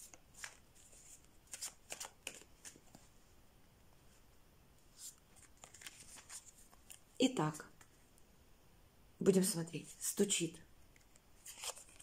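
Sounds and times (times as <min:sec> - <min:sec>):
cards being shuffled: 0:00.0 - 0:03.1, 0:04.9 - 0:07.0, 0:11.0 - 0:12.0.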